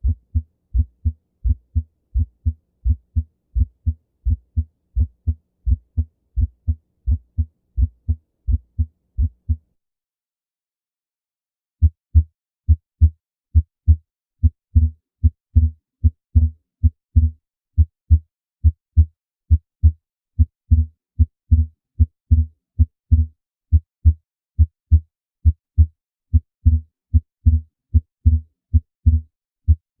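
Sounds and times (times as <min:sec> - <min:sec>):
heartbeat lub-dub: 0:00.0 - 0:09.6.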